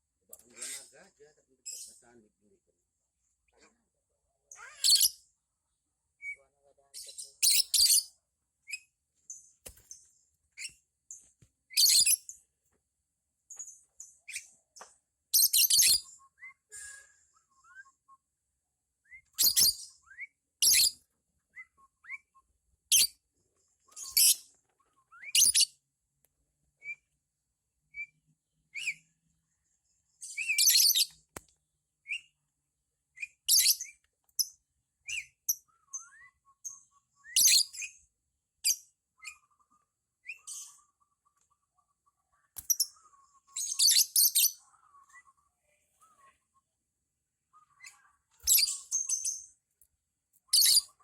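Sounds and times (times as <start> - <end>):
birds screeching: 4.5 - 5.2, 11.8 - 12.3, 23.9 - 25.7, 42.7 - 46.4, 47.5 - 49.5, 50.5 - 51.0.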